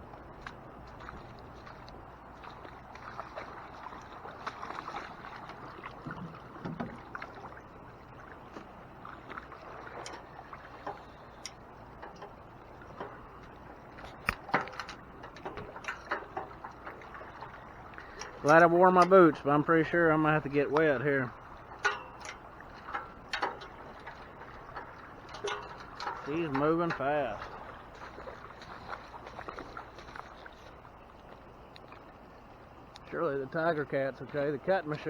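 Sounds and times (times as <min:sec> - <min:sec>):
floodwater running: 0:00.0 - 0:35.0
clicks and knocks: 0:21.7 - 0:24.1, 0:24.7 - 0:27.6.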